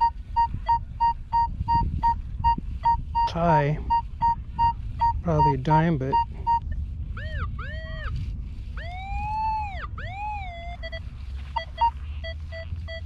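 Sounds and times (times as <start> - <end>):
short repeated beeps: 0.0 - 6.7, 10.8 - 13.0
metal detector tones: 0.0 - 8.1, 8.8 - 13.0.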